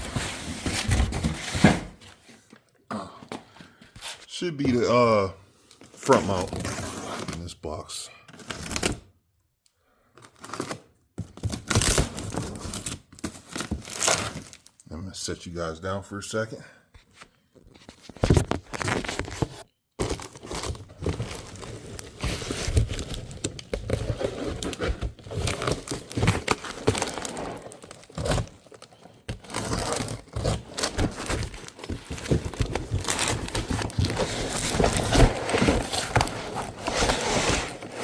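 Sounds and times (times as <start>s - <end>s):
packaging rustling: 17.8s - 38.0s.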